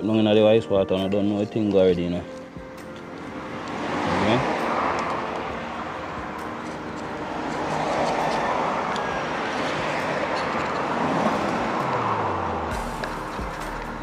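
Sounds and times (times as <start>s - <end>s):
road traffic passing: 0.0s - 14.0s
vehicle engine passing by: 3.3s - 14.0s.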